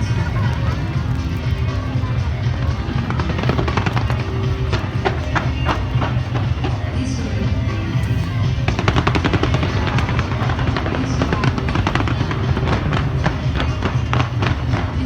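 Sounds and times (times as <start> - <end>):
fireworks bursting: 0.0 - 15.0
loud music with heavy bass: 0.0 - 15.0.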